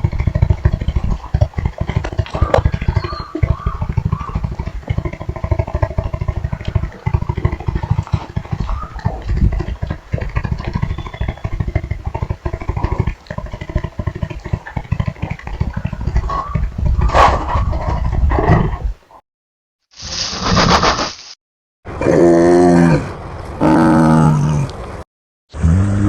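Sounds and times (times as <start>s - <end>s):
monster growl: 0.0s - 13.1s, 22.0s - 24.8s.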